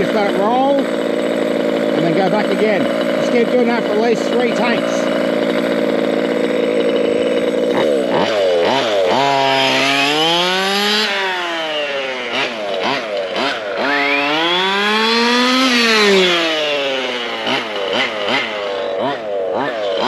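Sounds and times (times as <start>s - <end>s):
two-stroke engine revving: 0.0s - 20.0s.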